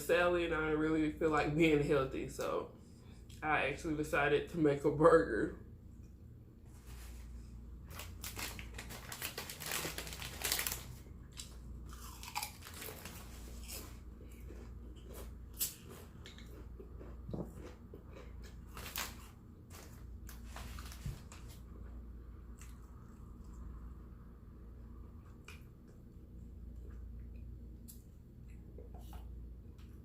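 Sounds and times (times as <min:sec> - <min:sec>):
person chewing crunchy food: 0:08.0 - 0:21.5.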